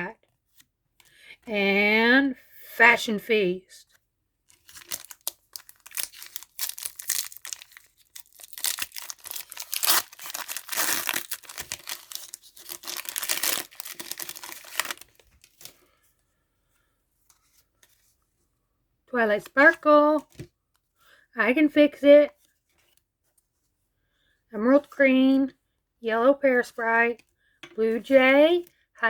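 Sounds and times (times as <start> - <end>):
wrapper crinkling and tearing: 4.5 - 15.8.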